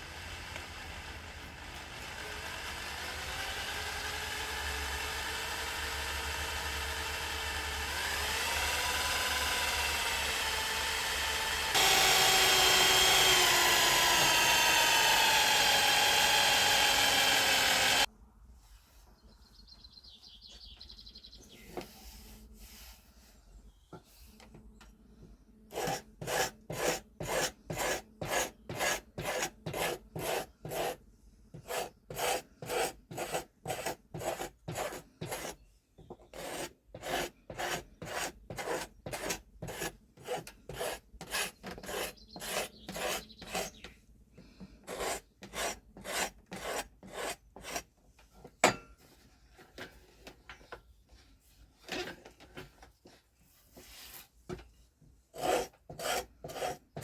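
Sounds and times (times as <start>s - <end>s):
rasp scraping on wood: 7.8s - 18.1s, 25.7s - 31.0s, 31.6s - 35.6s, 36.3s - 43.9s, 44.8s - 47.9s, 55.3s - 57.0s.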